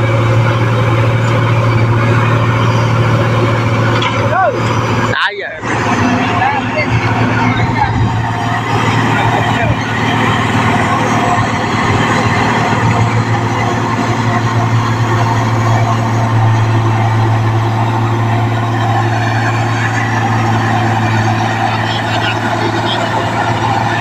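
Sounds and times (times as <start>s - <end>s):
combine harvester running: 0.0s - 24.0s.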